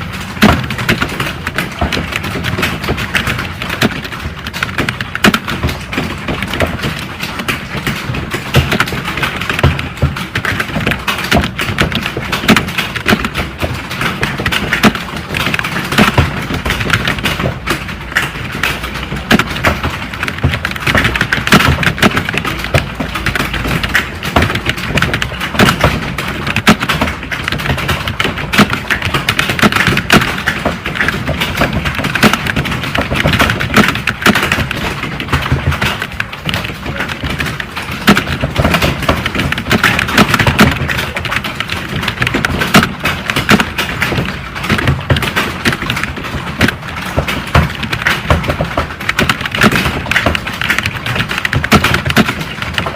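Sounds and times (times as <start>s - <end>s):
fast typing on a computer keyboard: 0.0s - 52.9s.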